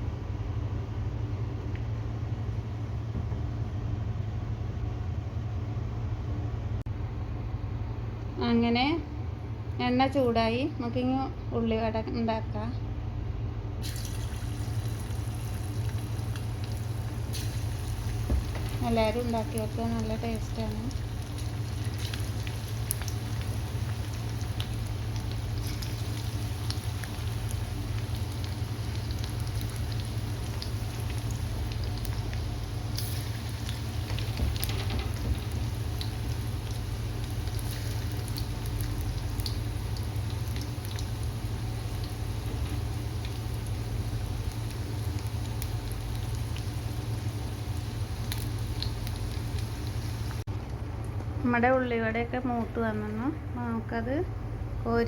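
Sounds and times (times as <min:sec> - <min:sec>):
steady low hum: 0:00.0 - 0:55.0
food sizzling in hot oil: 0:13.8 - 0:50.5.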